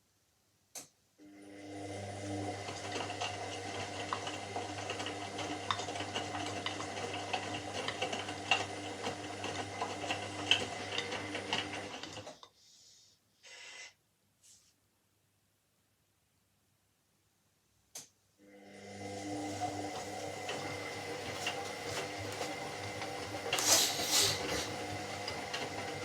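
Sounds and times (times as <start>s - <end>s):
washing machine running: 1.4s - 12.4s, 18.4s - 26.0s
short hisses: 23.6s - 24.7s.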